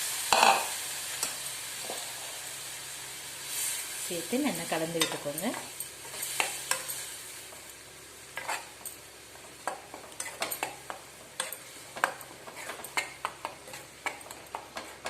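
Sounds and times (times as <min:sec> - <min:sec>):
faint sizzle: 0:00.0 - 0:15.0.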